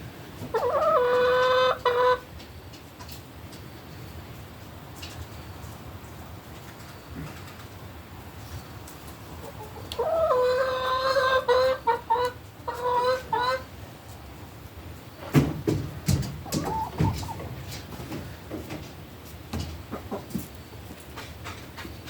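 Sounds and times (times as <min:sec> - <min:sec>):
chicken calling: 0:00.4 - 0:02.3, 0:08.8 - 0:13.8, 0:16.4 - 0:17.7.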